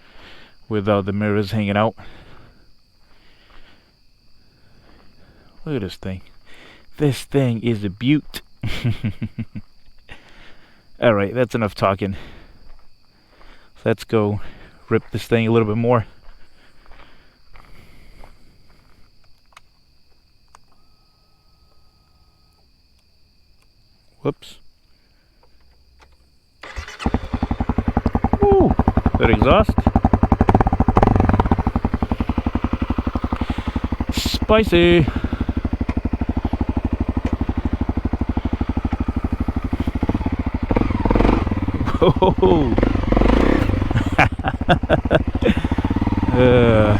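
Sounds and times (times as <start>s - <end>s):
crickets chirring: 0.0s - 46.9s
motorcycle engine putting: 26.6s - 46.9s.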